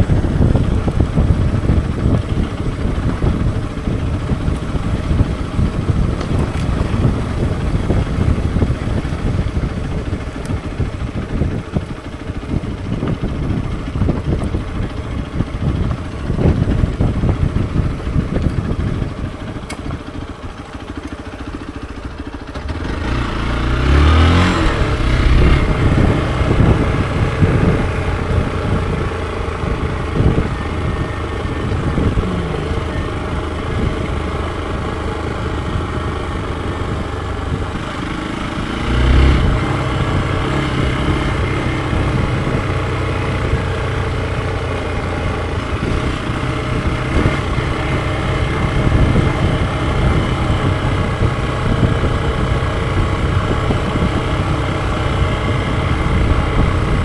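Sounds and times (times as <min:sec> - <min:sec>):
motorcycle engine running: 0:00.0 - 0:57.0.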